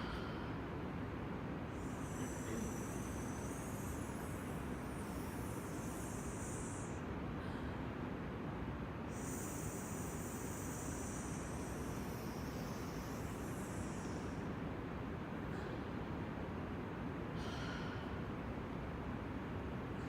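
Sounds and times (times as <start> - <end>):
steady low rumble: 0.0 - 7.8
slow hissing breaths: 0.0 - 20.0.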